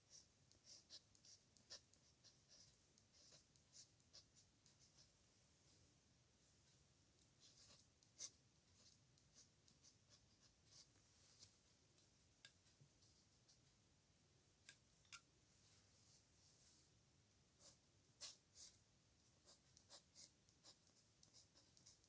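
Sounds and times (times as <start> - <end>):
pen scratching on paper: 0.1 - 5.1, 7.4 - 10.9, 17.6 - 18.8, 19.4 - 22.0.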